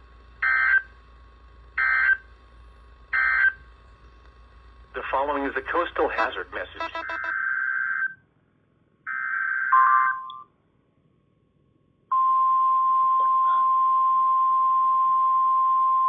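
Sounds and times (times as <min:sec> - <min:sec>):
steady alarm tone: 0:06.0 - 0:07.4
digital data screech: 0:06.2 - 0:07.3.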